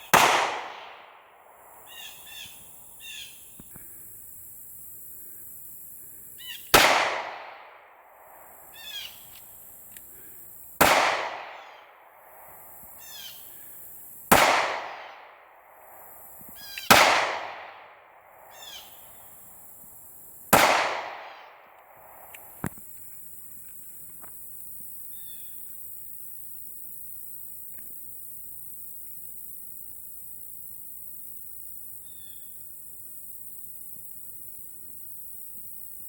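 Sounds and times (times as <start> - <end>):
gunshots with echo: 0.0 - 1.3, 6.7 - 7.8, 10.8 - 11.9, 14.3 - 15.4, 16.9 - 18.0, 20.5 - 21.6.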